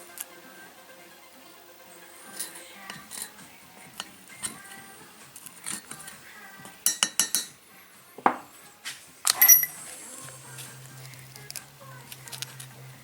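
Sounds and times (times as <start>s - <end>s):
small metal parts clinking: 9.3s - 9.8s.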